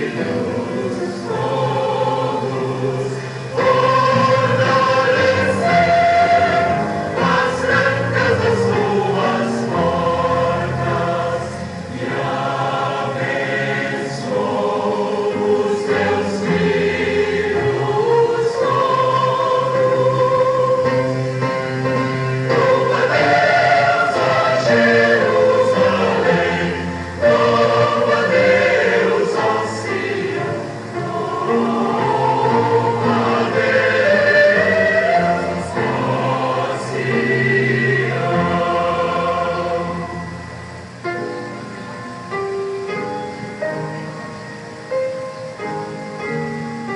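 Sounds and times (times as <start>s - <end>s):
church choir singing a hymn: 0.0s - 41.4s.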